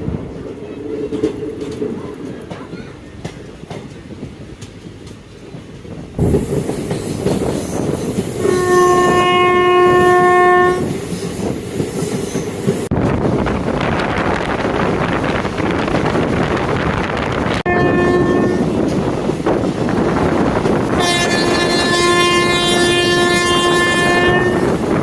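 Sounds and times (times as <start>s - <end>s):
train running on rails: 0.0s - 25.0s
train horn blast: 8.4s - 11.0s, 17.6s - 18.7s, 20.9s - 24.8s.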